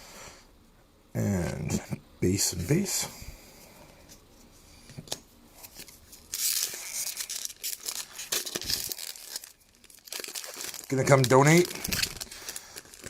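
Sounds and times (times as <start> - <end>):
foil wrapper crinkling and tearing: 5.6 - 13.0.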